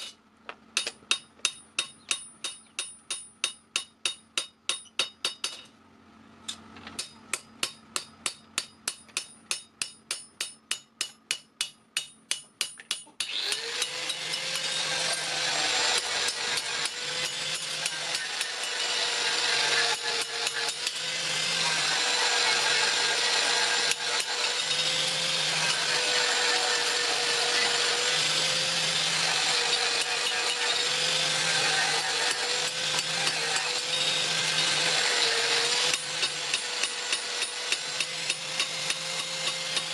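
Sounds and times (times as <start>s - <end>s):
hammer striking steel: 0.0s - 5.7s, 6.5s - 39.9s
power grinder on metal: 13.2s - 39.9s.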